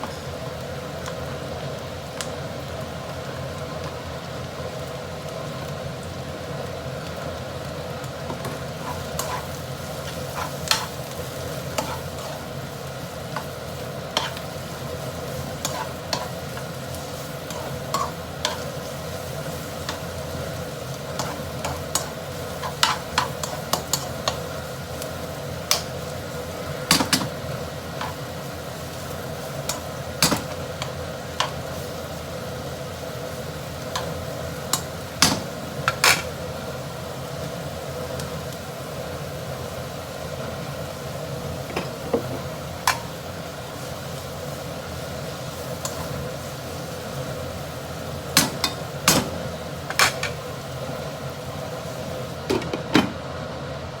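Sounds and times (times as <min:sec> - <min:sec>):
food sizzling in a pan: 0:00.0 - 0:54.0
spatula scraping a pan: 0:08.8 - 0:12.6, 0:14.1 - 0:20.1, 0:20.9 - 0:24.4.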